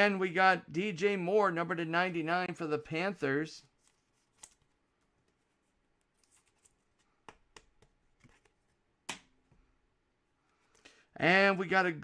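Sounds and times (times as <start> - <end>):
cards rustling: 3.6 - 8.8.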